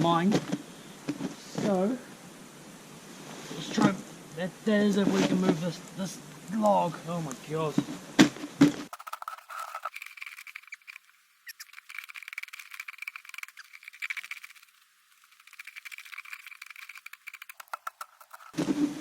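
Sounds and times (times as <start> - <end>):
crackling and scraping in snow: 8.9 - 19.0.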